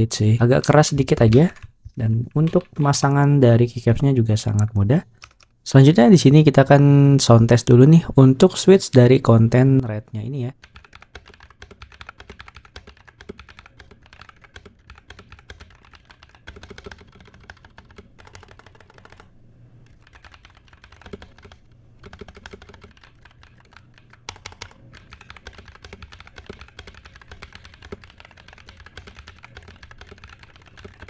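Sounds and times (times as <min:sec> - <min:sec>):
mechanical keyboard keystrokes clacking: 0:02.4 - 0:03.2, 0:10.6 - 0:31.0.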